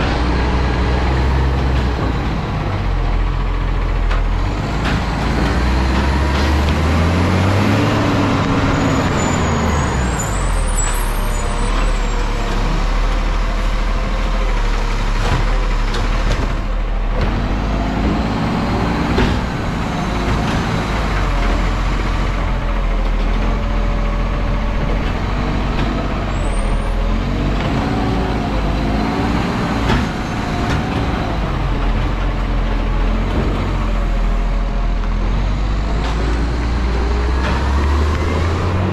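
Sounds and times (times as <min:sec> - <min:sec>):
truck diesel engine revving: 0:00.0 - 0:38.9
short high squeals: 0:08.8 - 0:12.2.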